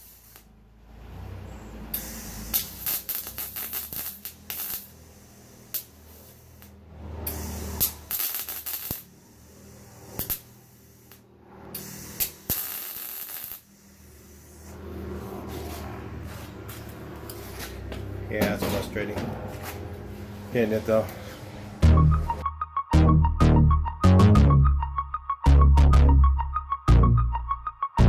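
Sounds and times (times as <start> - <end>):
welder crackling: 1.9 - 17.8.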